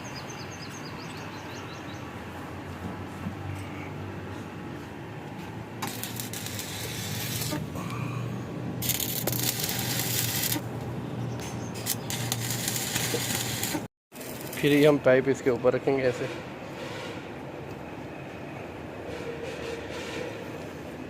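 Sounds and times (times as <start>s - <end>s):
arc welding crackling hiss: 5.8s - 7.7s, 8.8s - 10.7s, 11.8s - 14.9s.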